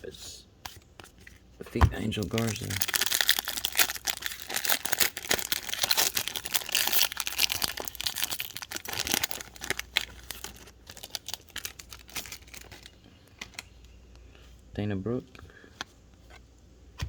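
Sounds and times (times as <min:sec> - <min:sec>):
wrapper tearing and crinkling: 0:02.0 - 0:12.9.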